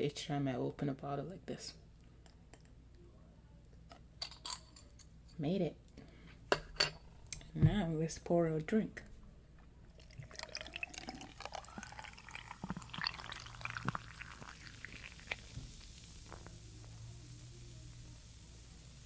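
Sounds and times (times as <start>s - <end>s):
drink fizzing: 9.9s - 19.0s
drink pouring over ice: 10.0s - 17.4s.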